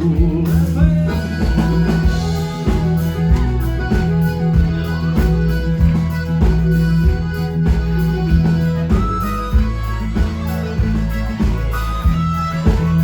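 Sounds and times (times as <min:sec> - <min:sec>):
bass and drum beat: 0:00.0 - 0:13.0
guitar: 0:00.0 - 0:13.0
live band playing country-folk: 0:00.0 - 0:13.0.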